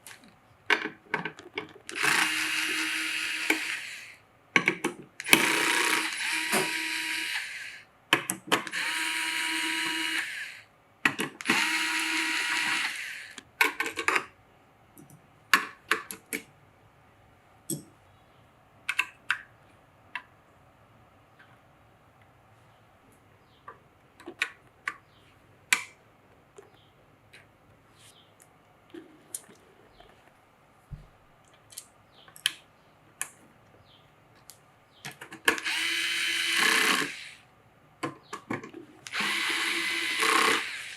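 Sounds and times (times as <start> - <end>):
electric screwdriver running: 1.9 - 4.1, 5.2 - 7.8, 8.7 - 10.6, 11.4 - 13.4, 35.6 - 37.4, 39.1 - 40.9.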